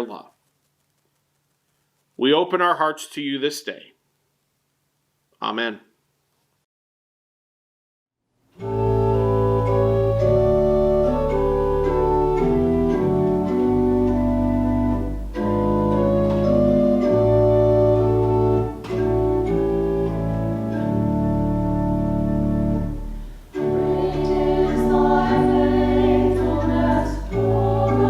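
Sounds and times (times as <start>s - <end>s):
organ playing hymn chords: 8.6s - 28.0s.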